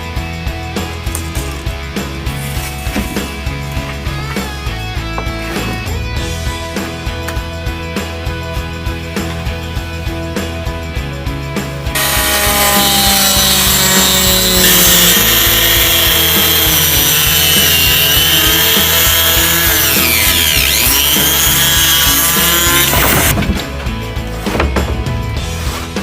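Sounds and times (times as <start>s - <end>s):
power tool cutting: 12.0s - 23.4s.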